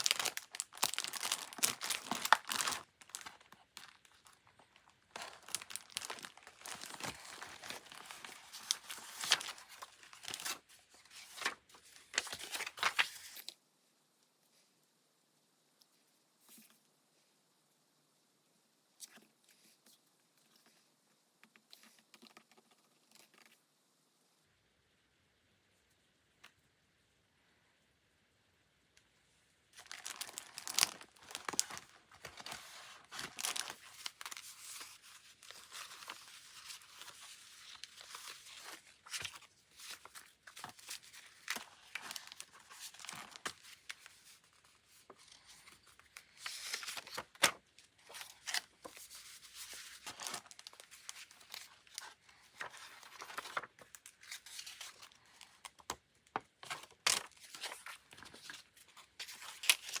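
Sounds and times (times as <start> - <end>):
paper rustling and crinkling: 0.0 - 13.6, 29.8 - 60.0.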